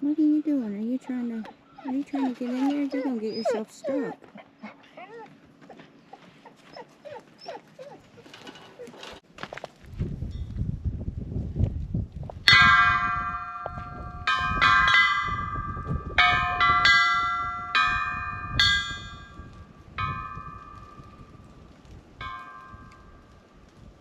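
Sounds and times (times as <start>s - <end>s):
metal bell ringing: 12.5s - 20.9s.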